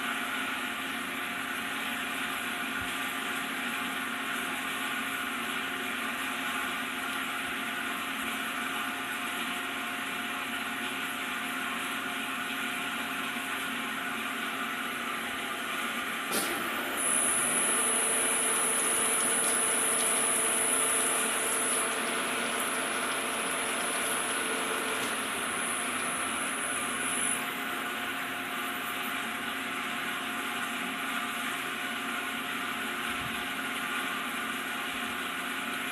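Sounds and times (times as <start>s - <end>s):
gear hobbing machine humming: 14.6s - 29.6s
sharp click: 16.3s - 16.6s
high-pitched whine: 16.4s - 29.3s.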